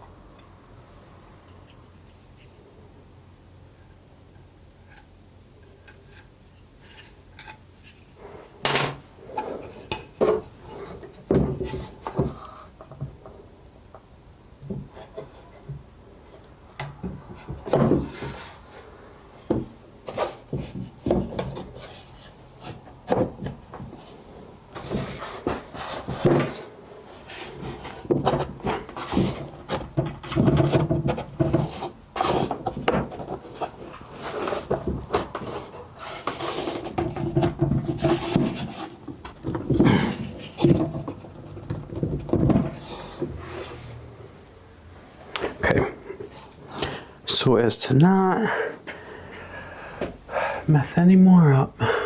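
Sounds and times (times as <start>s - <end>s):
wood rubbing on wood: 17.0s - 44.2s
wood knocking and tapping: 36.8s - 43.4s.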